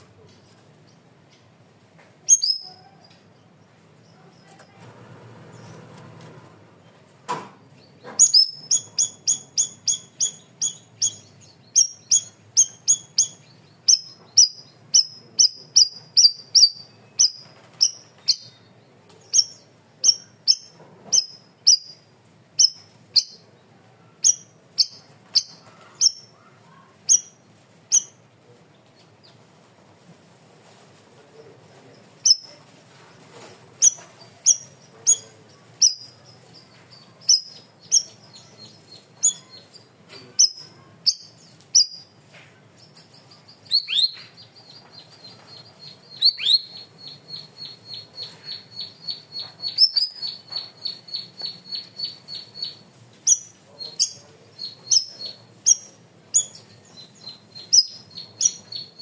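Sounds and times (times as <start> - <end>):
songbird sharp high chirps: 2.2 - 3.2, 7.9 - 23.4, 24.2 - 26.4, 27.1 - 28.2, 32.2 - 32.6, 33.8 - 42.1, 42.8 - 59.0.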